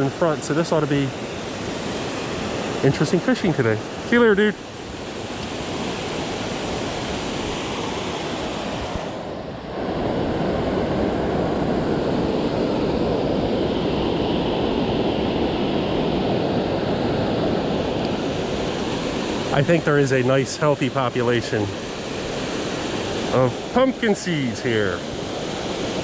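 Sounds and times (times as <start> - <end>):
flowing water rushing: 0.0 - 26.0.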